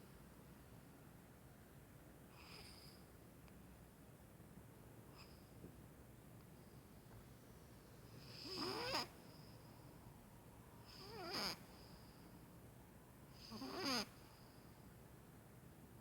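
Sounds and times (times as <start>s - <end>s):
cat snoring: 8.2s - 9.1s, 10.8s - 11.7s, 13.4s - 14.2s.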